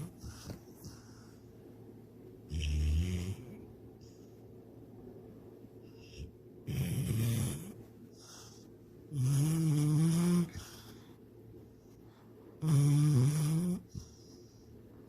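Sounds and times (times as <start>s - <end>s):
dog breathing: 0.0s - 1.6s, 5.8s - 12.4s, 13.6s - 14.8s
dog snoring: 2.5s - 4.2s, 5.9s - 11.0s, 12.6s - 14.6s.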